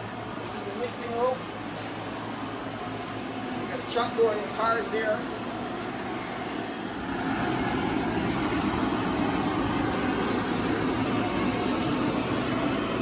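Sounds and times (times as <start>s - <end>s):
electric air blower humming: 5.2s - 13.0s.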